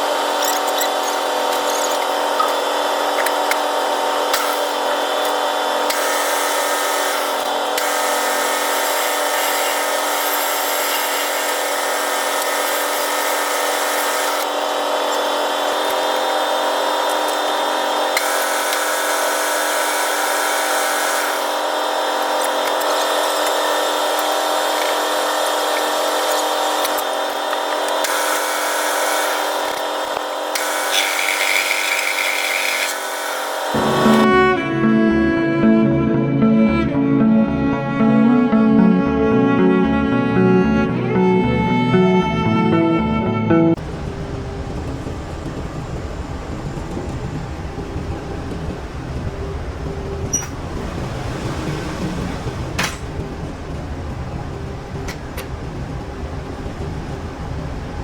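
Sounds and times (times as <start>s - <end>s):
metal lathe humming: 0.0s - 34.8s.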